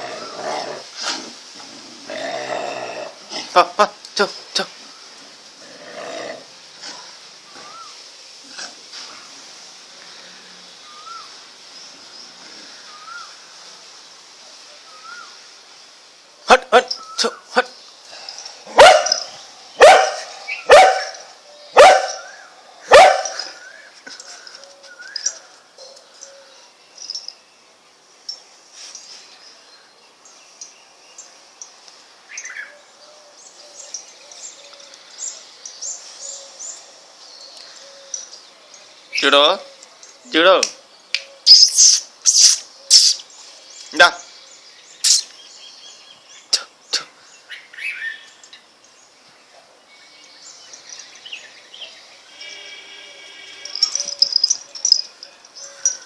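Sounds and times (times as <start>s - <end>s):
birds chirping: 3.8s - 8.0s, 10.0s - 13.6s, 16.4s - 56.0s
lower bird calls: 7.5s - 8.0s, 10.8s - 11.4s, 40.8s - 44.1s
sharp snaps: 40.6s - 44.0s, 45.0s - 45.4s.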